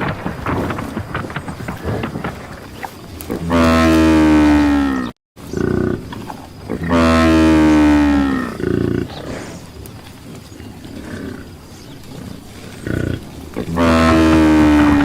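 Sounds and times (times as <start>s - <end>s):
buffalo mooing: 3.3s - 9.5s, 10.6s - 15.0s.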